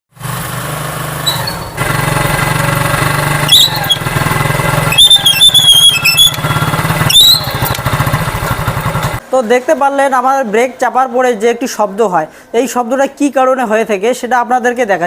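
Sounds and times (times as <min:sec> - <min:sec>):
motorcycle engine running: 0:00.1 - 0:09.2
motorcycle brake squealing: 0:01.2 - 0:01.9, 0:03.4 - 0:08.6.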